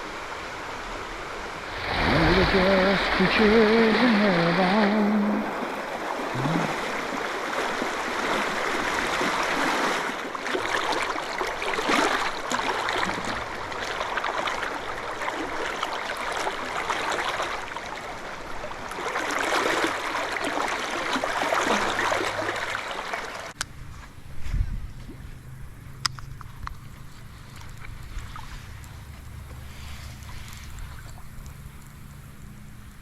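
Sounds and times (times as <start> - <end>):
rushing river water: 0.0 - 23.6.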